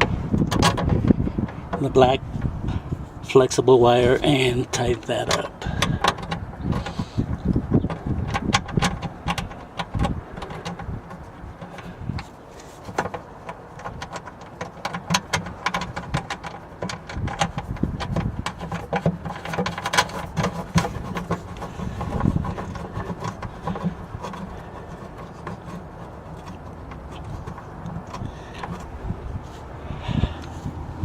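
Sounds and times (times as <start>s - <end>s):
cable rubbing: 0.0s - 31.0s
nut threading clicks and taps: 5.3s - 12.3s, 12.9s - 28.9s.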